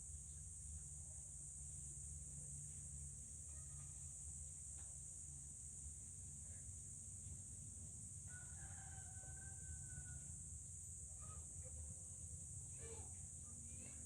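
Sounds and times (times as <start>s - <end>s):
steady high-pitched hiss: 0.0s - 14.0s
faint rooster crowing: 8.2s - 10.6s.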